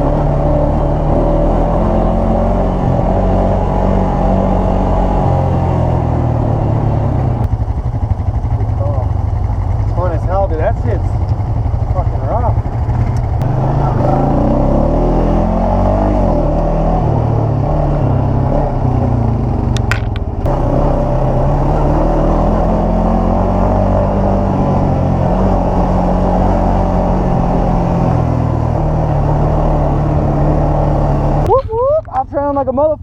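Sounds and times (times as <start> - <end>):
atv engine revving: 0.0 - 31.6.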